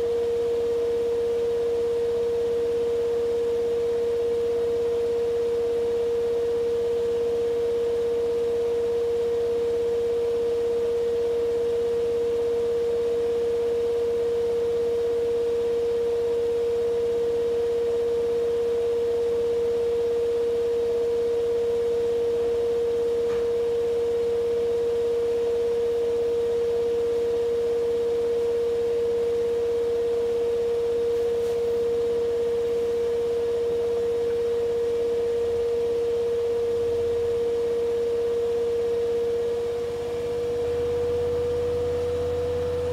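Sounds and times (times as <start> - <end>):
washing machine spin cycle: 0.0 - 42.9.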